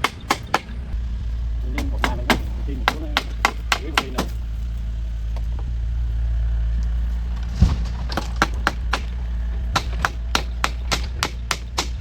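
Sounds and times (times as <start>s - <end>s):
hand tool striking wood: 0.0s - 1.0s, 1.7s - 4.5s, 7.5s - 12.0s
steady low hum: 0.0s - 12.0s.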